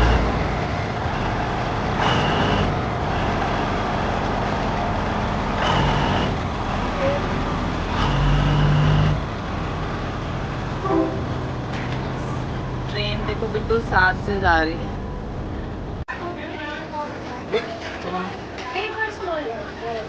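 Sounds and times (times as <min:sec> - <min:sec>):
diesel train rumbling past: 0:00.0 - 0:16.0
train horn blasts: 0:10.8 - 0:11.5.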